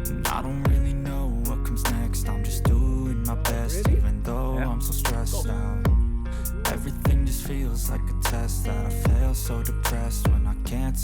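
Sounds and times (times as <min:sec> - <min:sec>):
deep bass kicks dropping in pitch: 0:00.0 - 0:08.5, 0:09.1 - 0:10.9
hip-hop backing music: 0:00.0 - 0:11.0.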